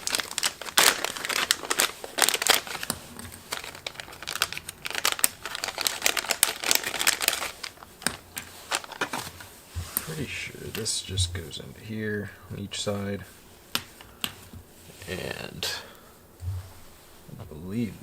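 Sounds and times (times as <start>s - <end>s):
packaging crinkling and rustling: 0.0s - 11.6s.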